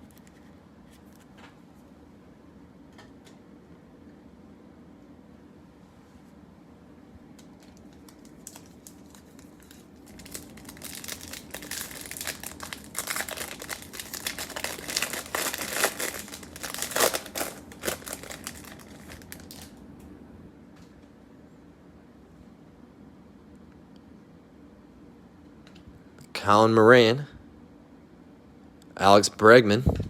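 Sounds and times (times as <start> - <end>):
foil wrapper tearing and crinkling: 7.6 - 19.7.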